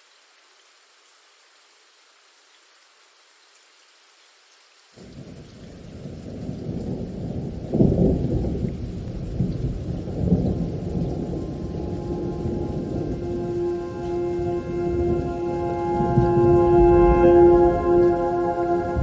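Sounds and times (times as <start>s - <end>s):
rain falling: 0.0s - 19.0s
thunder rumbling: 6.0s - 19.0s.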